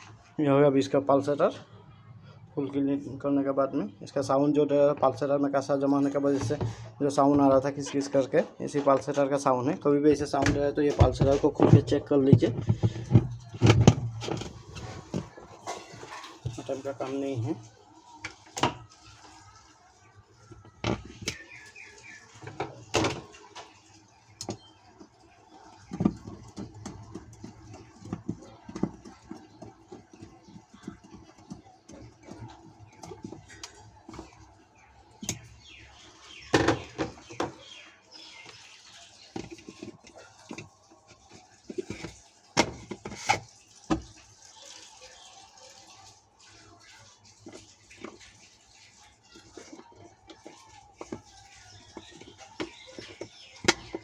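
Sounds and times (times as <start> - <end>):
plastic parts clicking and knocking: 6.0 - 19.2, 20.4 - 34.6, 35.2 - 37.7, 39.2 - 44.2, 49.4 - 54.0.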